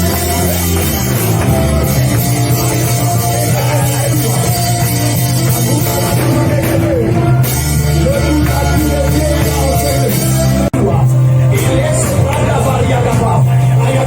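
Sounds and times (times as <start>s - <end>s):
worship band with singing: 0.0s - 14.0s.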